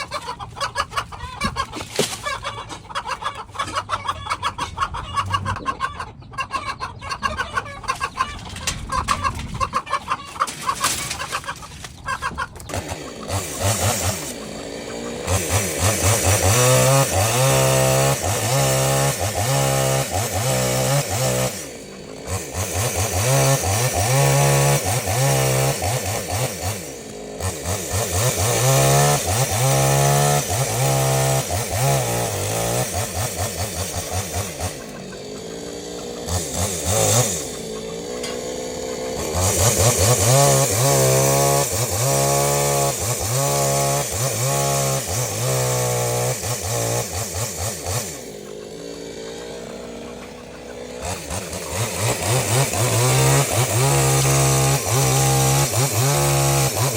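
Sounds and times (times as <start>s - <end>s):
chainsaw cutting wood: 0.0s - 5.4s, 7.8s - 56.9s.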